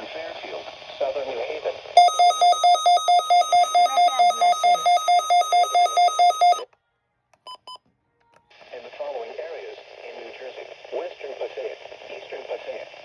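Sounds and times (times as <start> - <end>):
buzzy electronic alarm beeping: 2.0 - 6.6
short tone blips: 2.0 - 6.6.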